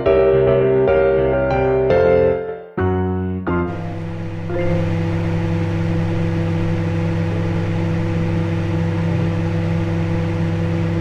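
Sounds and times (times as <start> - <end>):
appliance motor humming: 3.7 - 11.0.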